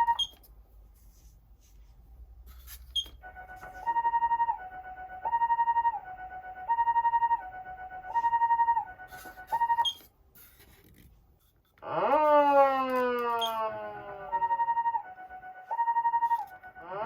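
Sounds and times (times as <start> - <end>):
hi-lo two-tone siren: 3.1 - 10.1, 11.8 - 17.0
siren tone sweeping up: 3.2 - 9.9, 11.8 - 17.0.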